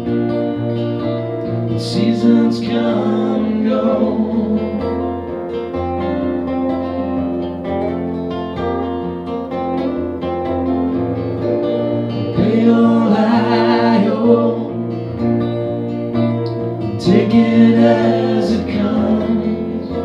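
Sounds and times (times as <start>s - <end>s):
guitars playing: 0.0s - 20.0s
person singing: 1.7s - 5.6s, 12.1s - 15.3s, 16.9s - 20.0s.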